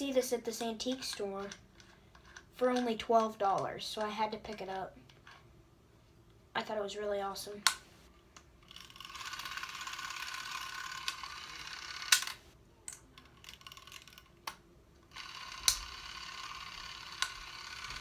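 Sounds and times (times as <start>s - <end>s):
clockwork camera whirring: 8.6s - 18.0s.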